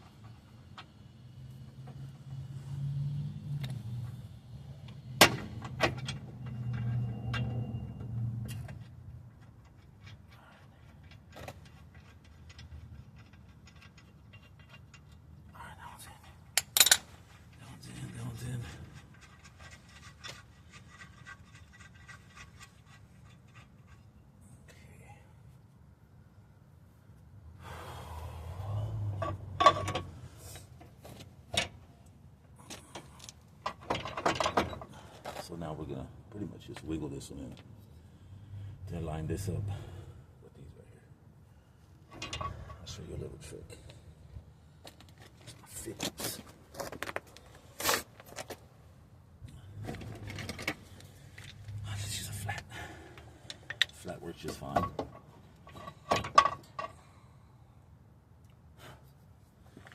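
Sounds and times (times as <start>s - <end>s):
metallic clanks of tools: 16.6s - 17.1s, 29.2s - 30.7s, 42.1s - 43.0s, 53.6s - 57.1s
person breathing heavily: 27.6s - 29.2s, 52.6s - 53.7s
metal knocks and clanks: 29.2s - 30.1s, 33.6s - 34.9s.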